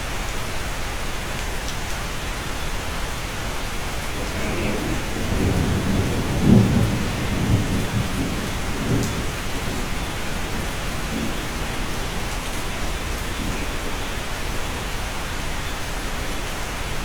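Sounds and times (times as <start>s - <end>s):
steady rain: 0.0s - 17.0s
low roll of thunder: 3.8s - 15.1s.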